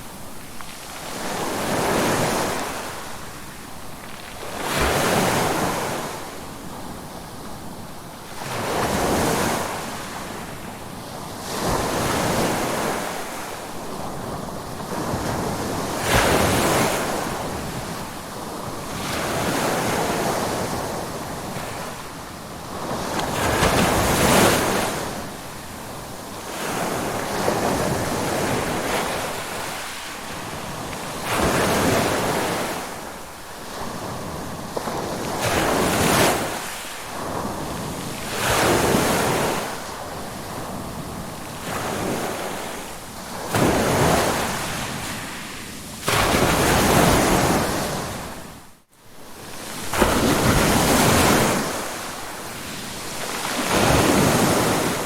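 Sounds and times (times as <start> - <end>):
ocean waves breaking: 49.4 - 55.0.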